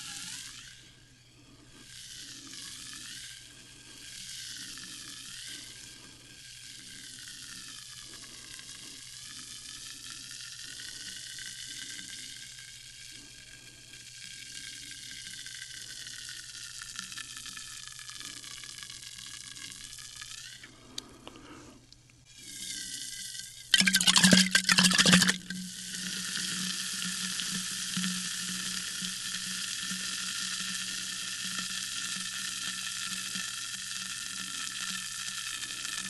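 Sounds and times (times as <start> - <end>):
sparkling water fizzing: 23.8 - 25.5.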